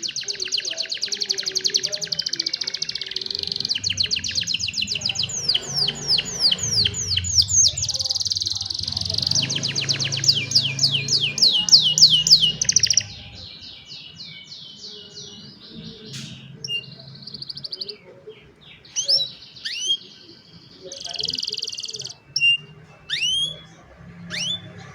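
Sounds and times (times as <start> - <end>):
canaries singing: 0.0 - 24.9.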